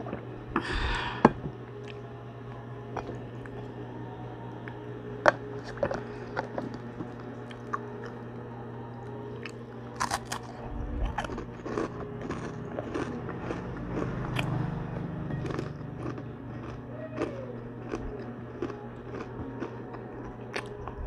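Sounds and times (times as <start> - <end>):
low steady hum: 0.0 - 21.0
crunchy pork rind chewing: 4.6 - 21.0.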